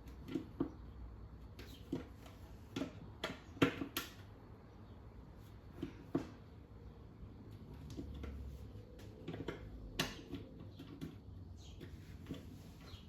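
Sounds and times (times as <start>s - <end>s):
plastic parts clicking and knocking: 0.0s - 4.4s, 7.8s - 12.5s.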